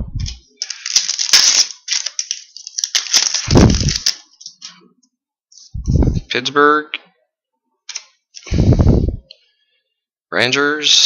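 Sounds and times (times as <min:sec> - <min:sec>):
foil wrapper tearing and crinkling: 0:00.6 - 0:04.7.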